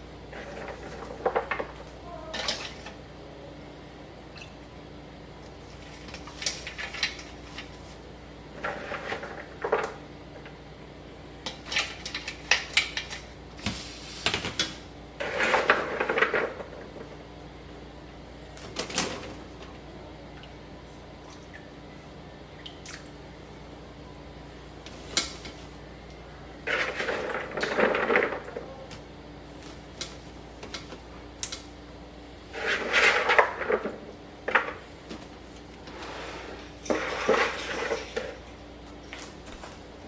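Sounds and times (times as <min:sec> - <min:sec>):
dishes and utensils clattering: 0:00.3 - 0:03.0, 0:36.6 - 0:38.5.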